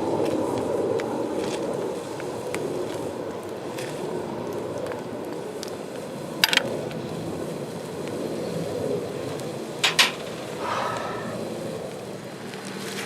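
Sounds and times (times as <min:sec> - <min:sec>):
low rushing noise: 0:09.8 - 0:12.4.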